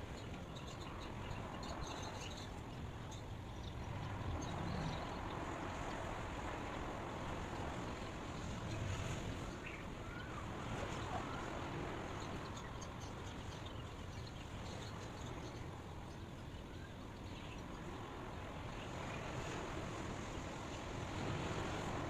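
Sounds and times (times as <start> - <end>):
outdoor hiss with low rumble: 0.0 - 22.0
faint bird chirps: 8.5 - 19.3.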